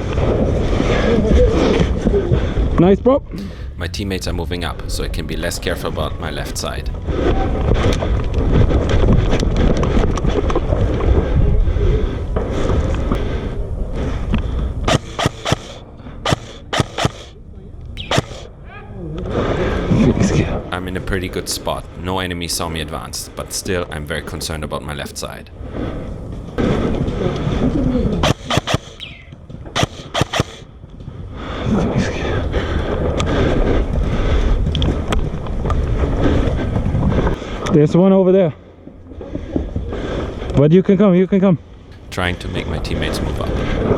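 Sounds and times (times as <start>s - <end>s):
people's voices: 3.3s - 7.0s, 20.5s - 25.5s, 42.0s - 43.7s
wind rumbling on microphone: 6.8s - 14.9s, 30.7s - 37.7s
airsoft gun shots: 28.2s - 29.0s, 29.8s - 30.6s.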